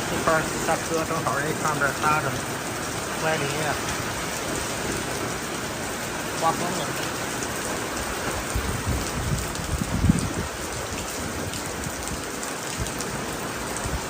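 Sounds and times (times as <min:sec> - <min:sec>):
heavy rain falling: 0:00.0 - 0:14.0
wind buffeting microphone: 0:06.9 - 0:14.0.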